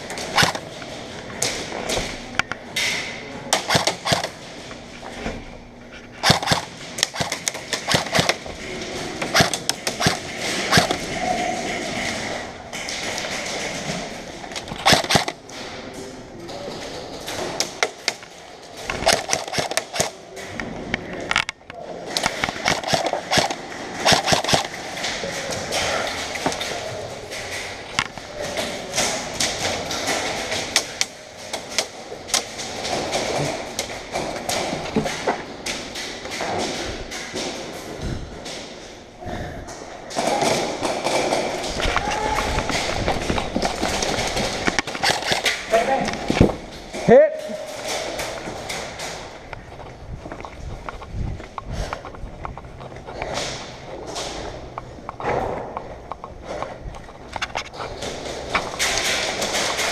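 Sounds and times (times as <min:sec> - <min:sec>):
sharp clicks and thumps: 0:00.0 - 0:05.4, 0:06.2 - 0:59.9
airsoft guns firing: 0:00.2 - 0:00.8, 0:02.8 - 0:04.6, 0:06.2 - 0:15.7, 0:17.3 - 0:20.2, 0:22.1 - 0:27.8, 0:40.1 - 0:46.5.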